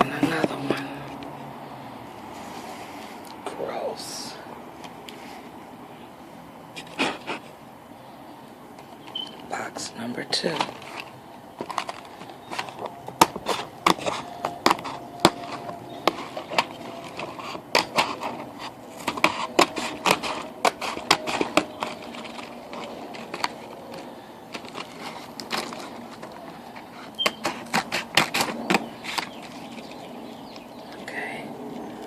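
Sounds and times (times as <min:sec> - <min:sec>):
cardboard box tearing and crackling: 0:10.5 - 0:30.1.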